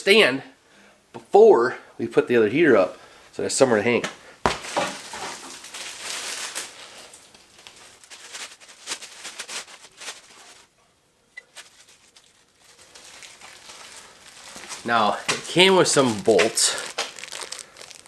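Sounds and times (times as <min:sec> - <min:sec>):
hands handling objects: 0:03.9 - 0:10.8, 0:11.4 - 0:18.0.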